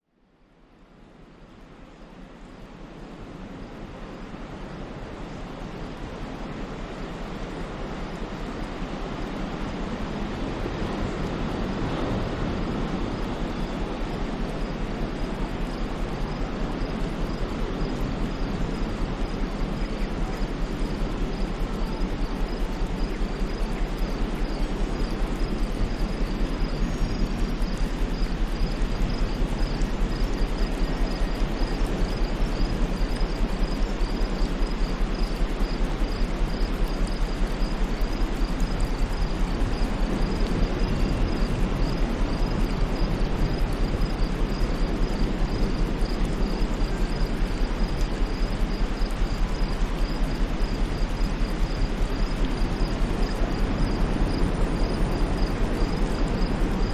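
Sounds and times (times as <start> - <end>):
insects chirping: 12.7 - 56.9.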